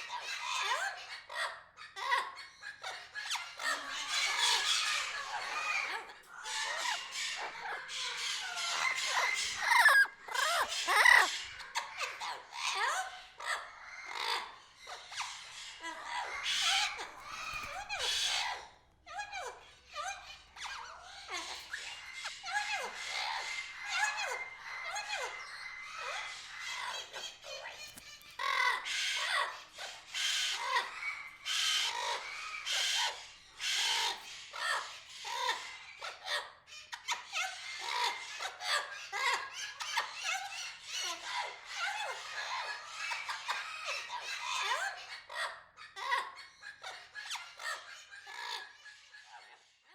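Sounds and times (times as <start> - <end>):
birds squawking: 0.0 - 49.7
birds chirping and whistling: 2.4 - 36.3.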